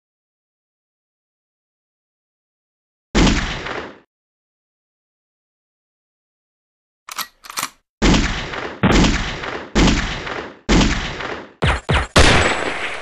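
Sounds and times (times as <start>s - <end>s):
sharp gunshots: 3.2s - 4.1s, 7.1s - 13.0s
gun clicks: 7.1s - 7.8s
heavy gunshots with echo: 8.0s - 13.0s.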